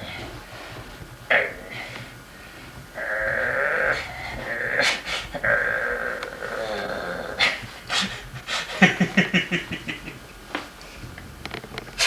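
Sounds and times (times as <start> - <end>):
puppy growling: 1.3 - 2.0, 2.9 - 10.0.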